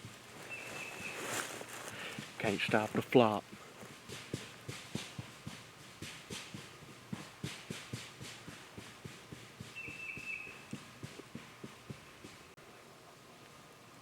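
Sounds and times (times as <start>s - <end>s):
wings thumping on dry leaves: 0.0s - 3.4s.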